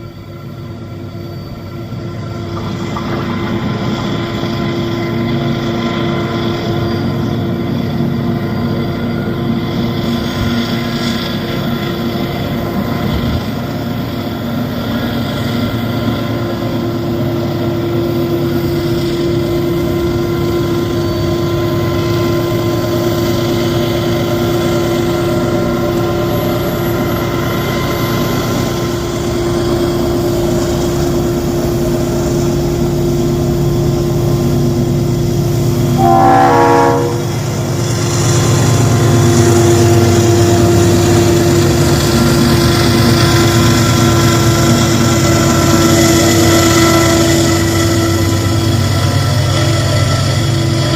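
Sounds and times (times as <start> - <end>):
locomotive engine drone: 0.0 - 50.9
train horn blast: 35.8 - 38.0.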